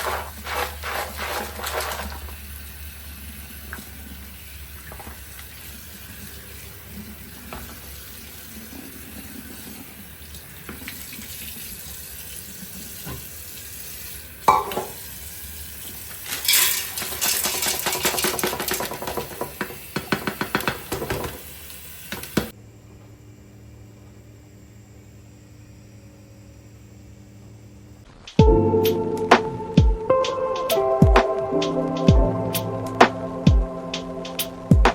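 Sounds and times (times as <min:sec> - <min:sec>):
water running into a sink: 0:00.0 - 0:22.5
dishes and utensils clattering: 0:14.5 - 0:15.0, 0:16.3 - 0:19.5.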